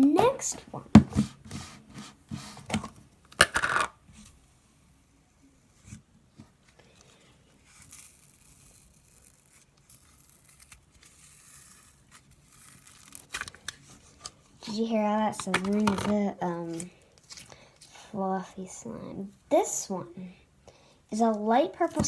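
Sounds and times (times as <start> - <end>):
slime crackling sizzle: 7.6 - 13.7.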